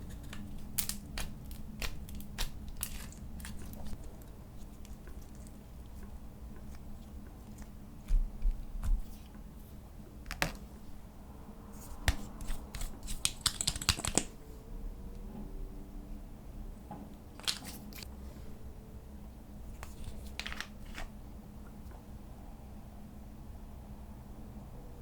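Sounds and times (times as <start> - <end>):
slime clicks and crackles: 0.1 - 5.6.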